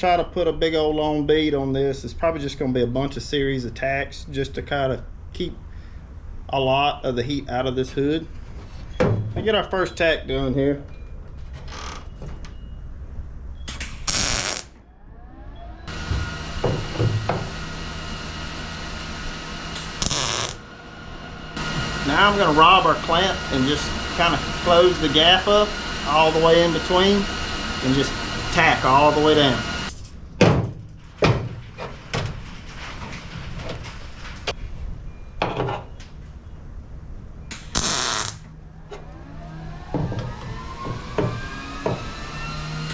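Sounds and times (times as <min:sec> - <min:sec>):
sharp click: 0:13.7 - 0:14.7
welding crackle and hiss: 0:13.7 - 0:14.7, 0:15.9 - 0:20.6, 0:21.6 - 0:29.9, 0:37.5 - 0:38.4
clamp knocking on sheet steel: 0:16.0 - 0:17.6
faint electrical hum: 0:17.2 - 0:28.1.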